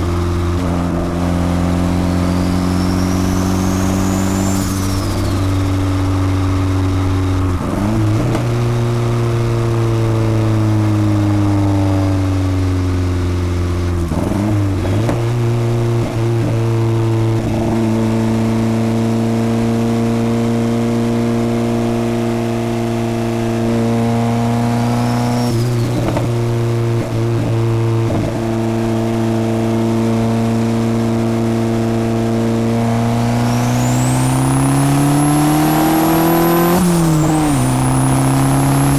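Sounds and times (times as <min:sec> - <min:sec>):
turbocharged car engine running: 0:00.0 - 0:38.9
turbo whistle: 0:00.9 - 0:06.2.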